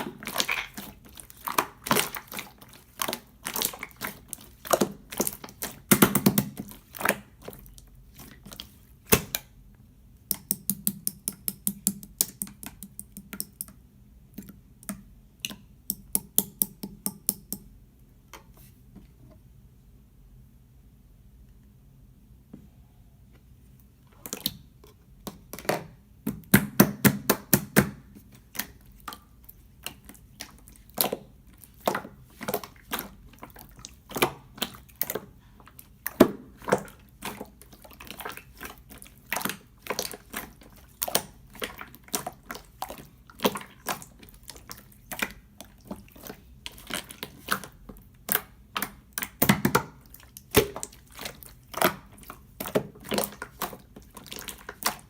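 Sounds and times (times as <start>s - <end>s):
slime squished by hand: 0.0s - 9.5s, 26.4s - 55.0s.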